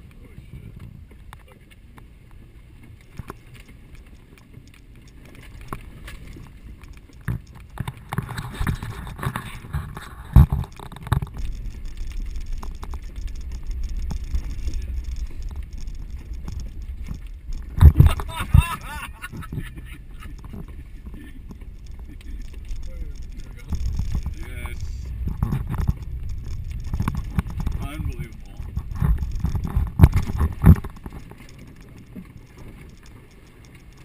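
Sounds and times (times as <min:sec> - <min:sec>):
low engine rumble: 0:09.4 - 0:33.4.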